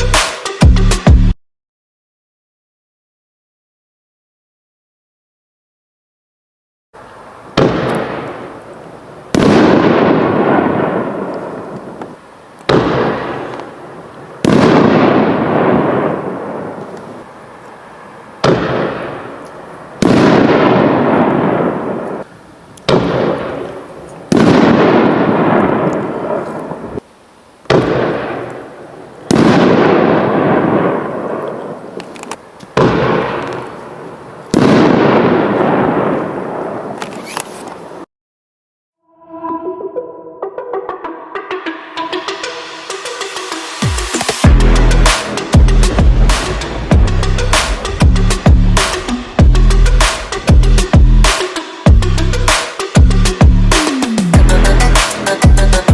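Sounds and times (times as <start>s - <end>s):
firework mortar launch thump: 27.7s - 28.6s, 34.5s - 37.7s, 45.0s - 51.4s
firework shell burst: 44.1s - 52.9s.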